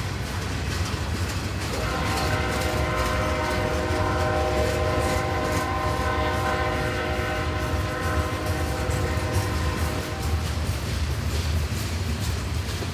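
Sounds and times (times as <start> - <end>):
locomotive rumble: 0.0 - 12.9
locomotive air horn chord: 1.7 - 10.6.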